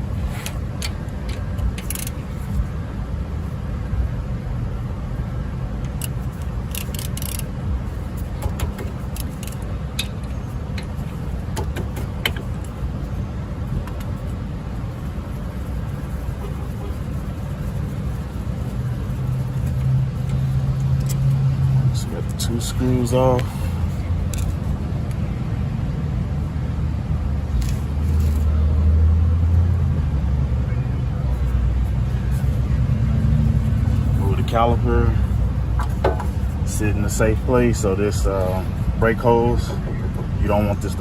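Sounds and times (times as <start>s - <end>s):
steady low rumble: 0.0s - 41.0s
socket wrench clicking on bolts: 0.8s - 2.2s, 5.8s - 7.5s, 8.4s - 10.9s.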